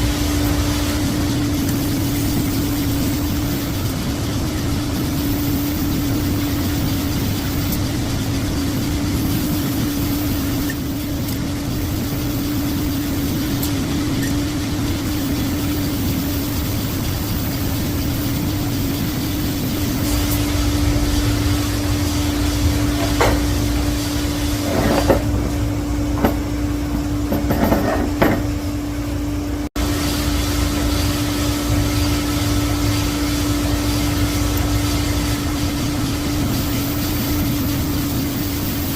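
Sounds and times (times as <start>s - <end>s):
machine motor humming: 0.0s - 27.4s.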